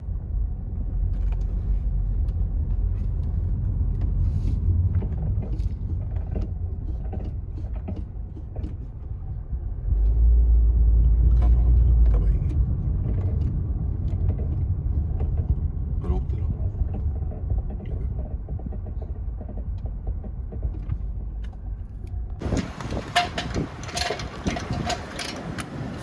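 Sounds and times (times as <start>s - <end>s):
car driving rumble: 0.0s - 26.0s
knocks and clicks: 22.4s - 26.0s.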